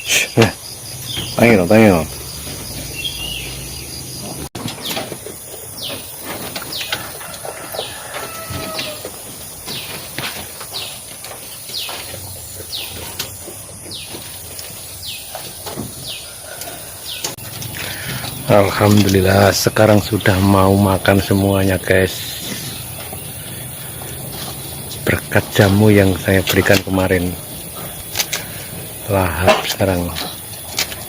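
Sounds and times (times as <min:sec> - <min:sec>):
goats chewing fodder: 0:03.7 - 0:19.9, 0:22.4 - 0:31.0.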